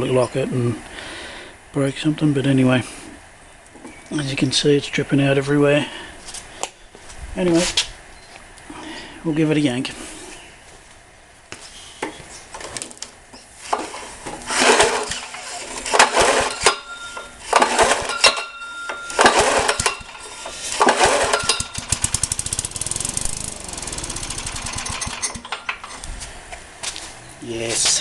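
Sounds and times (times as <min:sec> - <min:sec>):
recoil starter yanks: 0:13.7 - 0:26.0
mower engine running: 0:14.5 - 0:16.9, 0:17.5 - 0:18.4, 0:19.0 - 0:25.9.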